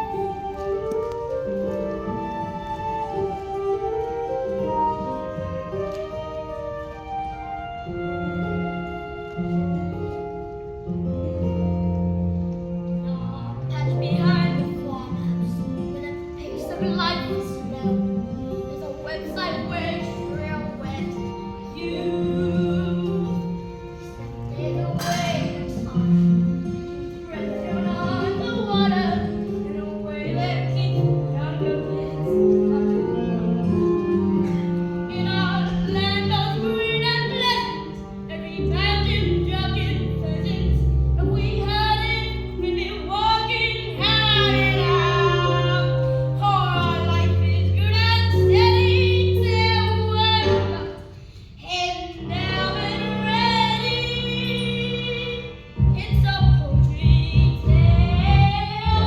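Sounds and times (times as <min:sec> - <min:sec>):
instrumental accompaniment: 0:00.0 - 0:59.0
young voices singing: 0:51.6 - 0:59.0.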